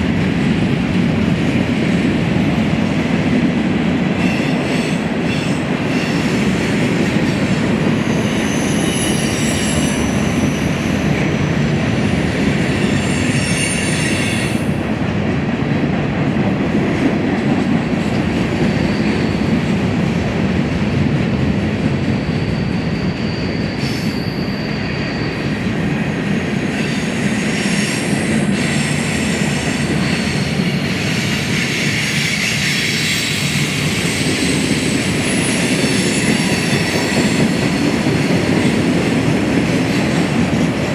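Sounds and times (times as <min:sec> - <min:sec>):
freight train rumbling on rails: 0:00.0 - 0:40.9
high-pitched wheel squeal: 0:08.0 - 0:11.1, 0:12.7 - 0:14.6, 0:22.3 - 0:25.6, 0:31.7 - 0:37.9.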